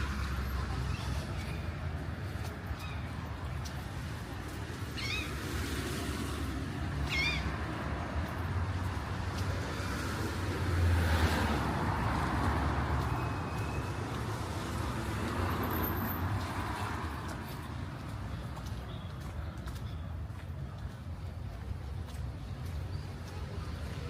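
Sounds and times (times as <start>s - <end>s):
vehicle passing: 0.0s - 18.7s
city street traffic: 0.0s - 24.0s.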